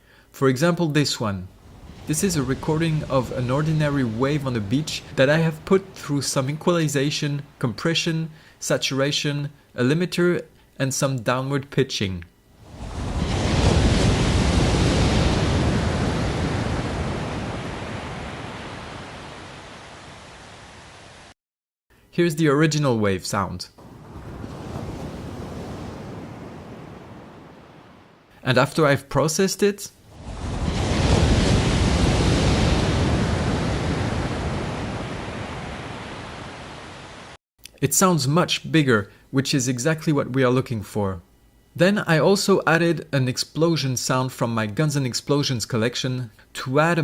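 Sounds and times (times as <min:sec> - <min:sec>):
deep rushing wave surge: 0:01.5 - 0:06.7, 0:12.6 - 0:20.8, 0:30.1 - 0:37.4
deep processed wave rush: 0:01.5 - 0:07.1.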